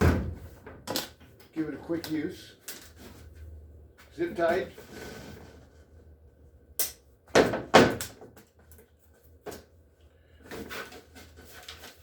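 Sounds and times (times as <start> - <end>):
cardboard scraping: 4.7 - 5.8.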